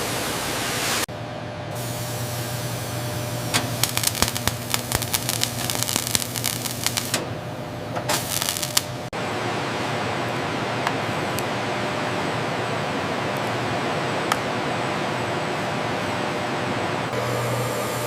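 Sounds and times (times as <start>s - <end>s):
steady hiss: 3.6s - 7.2s, 8.1s - 9.0s.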